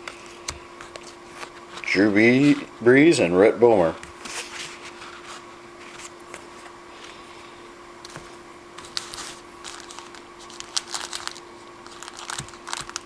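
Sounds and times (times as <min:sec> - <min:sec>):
steady low hum: 0:00.0 - 0:13.0
trading cards shuffled: 0:08.1 - 0:13.0.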